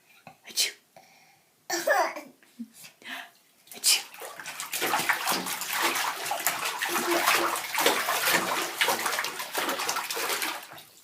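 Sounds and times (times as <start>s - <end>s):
water splashing and sloshing: 3.6s - 11.0s.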